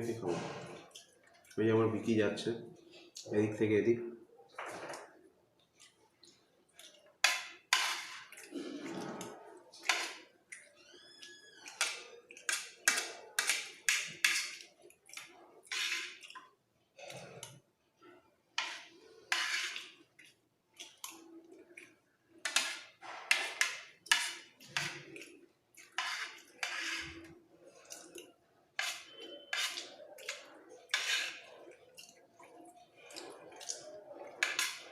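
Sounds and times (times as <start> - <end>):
spoon scraping a plate: 7.2 - 10.3, 11.6 - 16.4, 18.6 - 20.0, 22.4 - 27.4, 28.8 - 32.1, 33.2 - 34.9
chewing food: 29.0 - 34.9.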